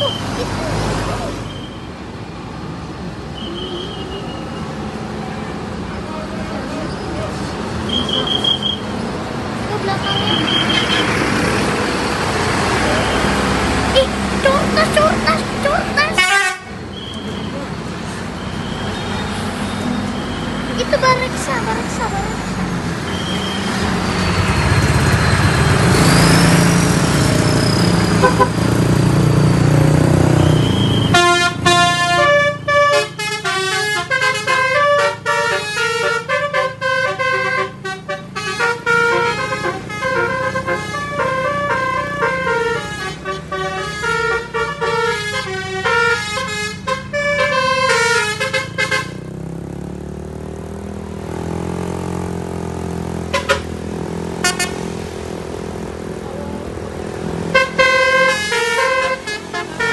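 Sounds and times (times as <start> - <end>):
bus engine running: 0.0 - 59.9
multi-note bus horn tune: 16.1 - 16.8, 28.2 - 28.6, 31.0 - 49.3, 53.3 - 53.8, 54.4 - 54.9, 57.4 - 59.9.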